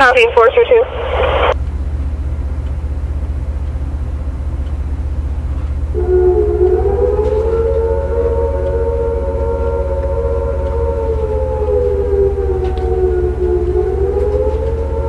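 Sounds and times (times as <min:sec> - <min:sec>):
constant low hum: 0:00.0 - 0:15.0
warning siren over loudspeakers: 0:05.9 - 0:15.0.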